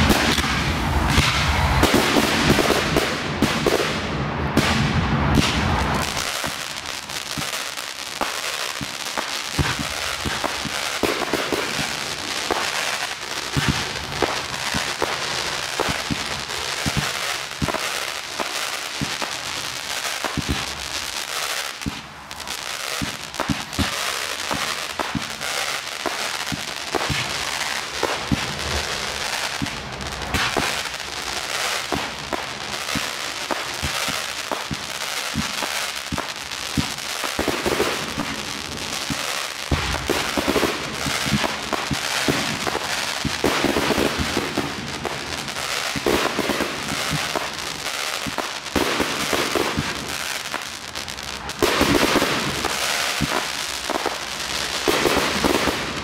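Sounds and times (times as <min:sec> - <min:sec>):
fireworks crackling: 0:00.0 - 0:56.0.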